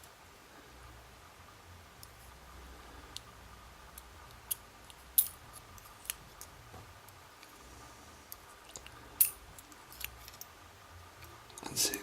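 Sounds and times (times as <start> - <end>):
metal lock pins clicking: 4.4 - 5.4.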